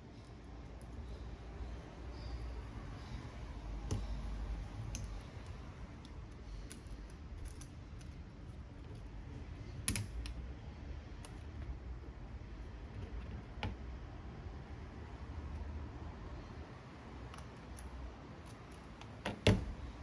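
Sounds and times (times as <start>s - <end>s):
small clicks and taps of tools: 3.8s - 9.1s, 9.8s - 10.4s, 17.2s - 19.6s.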